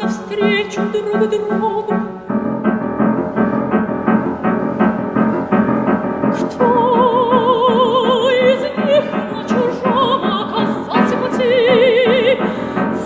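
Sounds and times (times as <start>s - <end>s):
soprano voice singing: 0.0s - 2.2s, 6.4s - 13.0s
piano chords: 0.0s - 13.0s.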